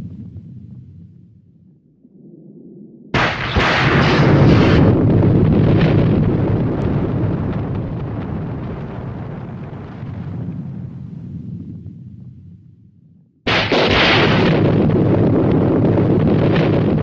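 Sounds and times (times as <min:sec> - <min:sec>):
thunderclap: 0:00.0 - 0:12.7, 0:13.5 - 0:17.0
low thunder rumble: 0:00.0 - 0:17.0.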